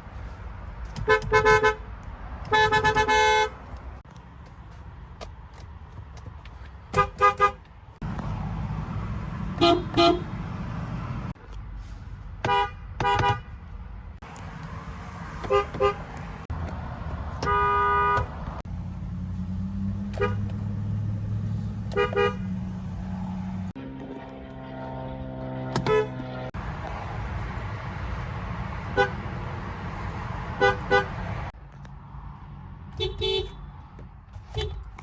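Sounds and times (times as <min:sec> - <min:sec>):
car horns tooting: 0:01.0 - 0:01.9, 0:02.5 - 0:03.7, 0:06.9 - 0:07.6, 0:09.5 - 0:10.4, 0:12.4 - 0:13.6, 0:15.4 - 0:16.5, 0:17.4 - 0:18.6, 0:20.0 - 0:20.6, 0:21.8 - 0:22.6, 0:28.9 - 0:29.3, 0:30.5 - 0:31.4, 0:32.9 - 0:33.7.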